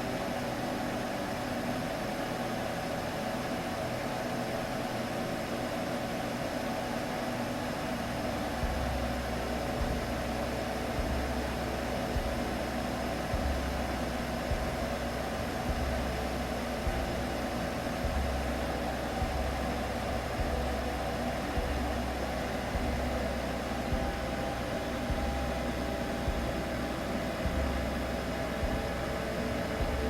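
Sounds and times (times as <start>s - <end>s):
faint humming tone: 0.0s - 30.0s
white noise hiss: 0.0s - 30.0s
deep low pulse: 7.6s - 30.0s.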